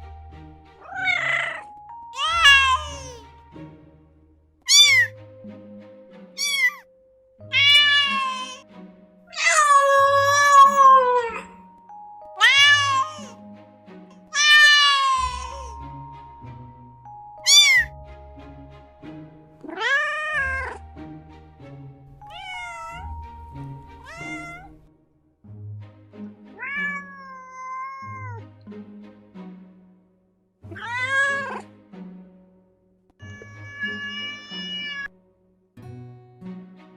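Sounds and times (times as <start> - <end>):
background music: 0.0 - 36.9
cats meowing: 0.8 - 3.2, 4.7 - 5.2, 6.4 - 8.6, 9.3 - 11.6, 12.3 - 13.5, 14.3 - 16.0, 17.4 - 18.0, 19.6 - 21.0, 22.2 - 24.8, 26.6 - 28.4, 30.7 - 31.7, 33.2 - 35.1.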